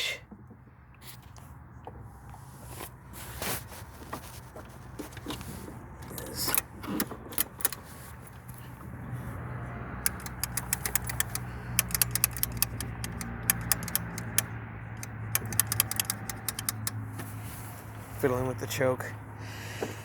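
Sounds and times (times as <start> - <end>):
metallic clicks and rattles: 6.0 - 7.9, 10.0 - 17.0
small engine idling: 10.0 - 17.4.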